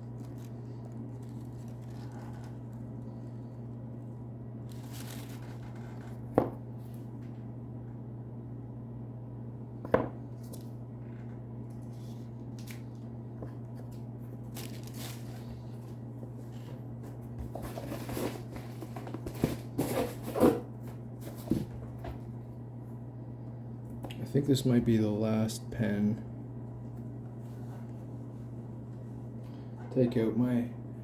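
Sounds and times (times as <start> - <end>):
low hum: 0.0 - 19.2
packaging rustling: 4.6 - 6.2, 14.4 - 16.0
items being set down: 17.4 - 22.2.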